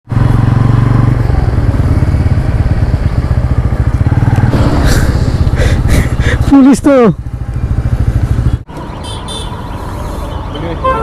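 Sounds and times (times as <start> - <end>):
motorcycle engine running: 0.1 - 8.7.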